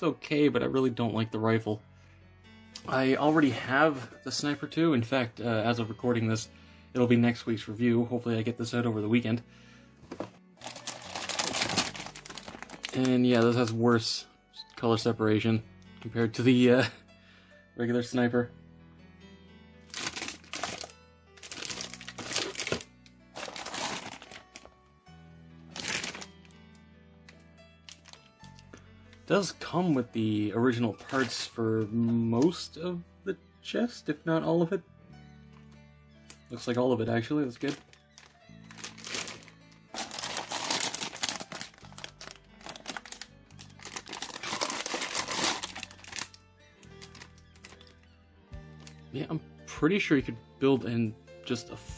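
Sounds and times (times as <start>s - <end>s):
quiet background music: 0.0s - 51.9s
plastic bags crinkling: 10.1s - 13.8s, 19.9s - 24.7s, 25.7s - 26.5s, 27.9s - 28.2s, 31.0s - 31.5s, 37.5s - 48.0s.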